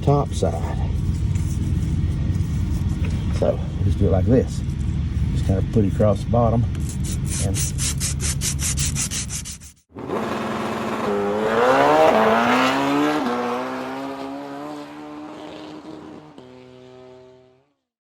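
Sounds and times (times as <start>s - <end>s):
emery cloth rasping on metal: 0.0s - 3.4s, 6.8s - 9.9s
engine-like drone: 0.0s - 8.7s, 9.8s - 17.6s.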